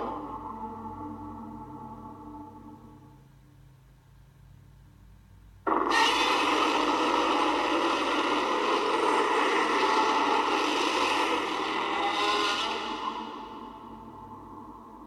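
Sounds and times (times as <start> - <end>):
monster roar: 5.7 - 14.0.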